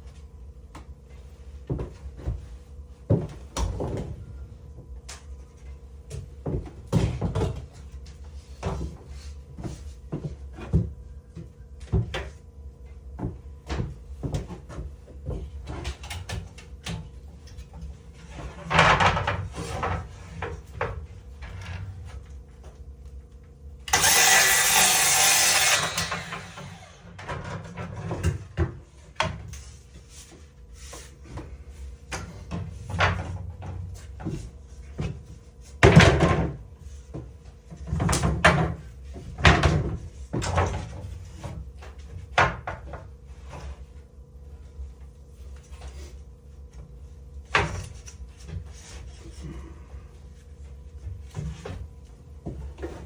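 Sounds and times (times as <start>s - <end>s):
power tool whirring: 23.9s - 27.3s.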